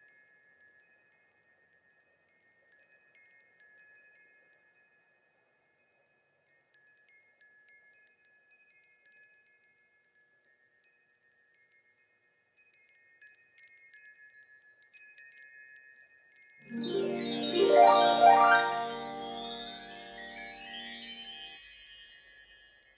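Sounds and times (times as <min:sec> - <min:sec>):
wind chimes ringing: 0:16.6 - 0:21.8.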